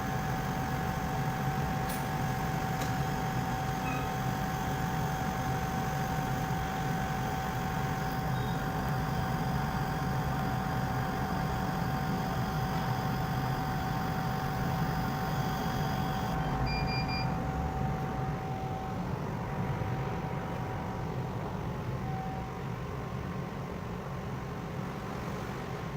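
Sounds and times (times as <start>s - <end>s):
machine whine: 0.0s - 20.2s
laser cutter mechanical hum: 0.0s - 25.2s.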